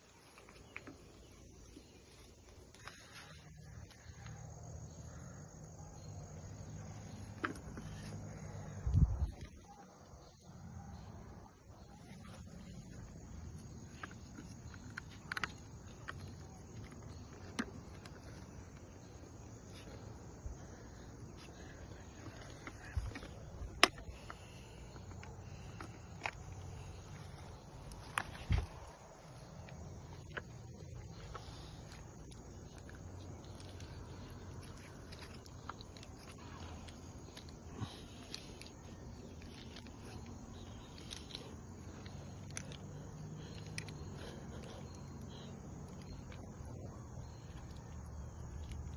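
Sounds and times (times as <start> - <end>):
sharp clicks and crackles: 12.7 - 19.4.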